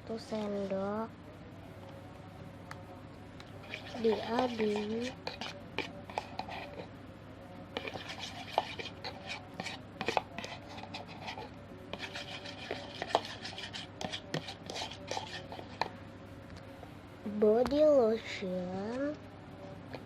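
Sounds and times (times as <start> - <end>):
spoon scraping container: 3.6 - 6.9, 7.8 - 15.9.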